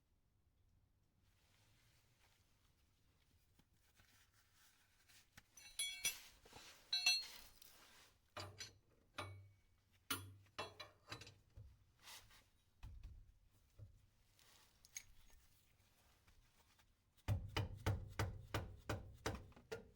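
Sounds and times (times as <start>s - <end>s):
tools knocking and clattering: 5.5s - 7.7s, 8.4s - 11.7s
metal tools clinking: 5.5s - 9.5s.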